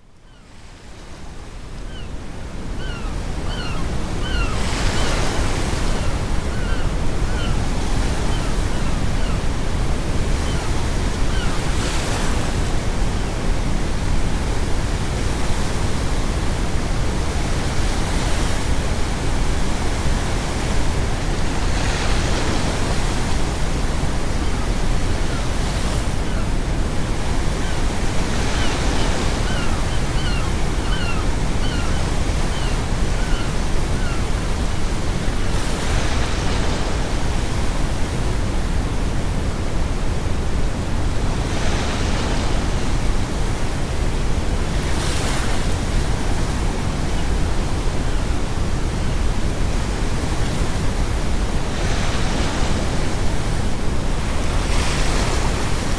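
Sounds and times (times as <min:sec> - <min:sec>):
seagulls calling: 0:02.8 - 0:09.5, 0:27.6 - 0:34.4
ocean waves breaking: 0:51.0 - 0:55.9.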